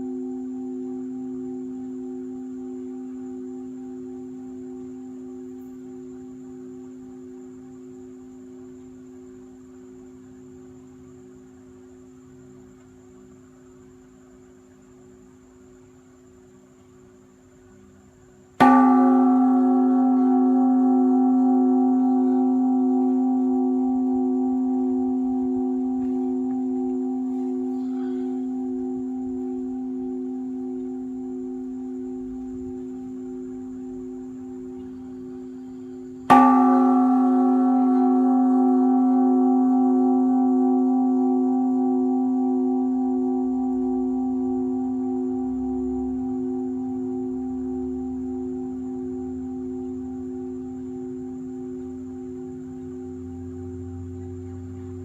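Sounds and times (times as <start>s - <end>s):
faint low hum: 0.0s - 55.0s
large temple bell ringing: 18.6s - 55.0s.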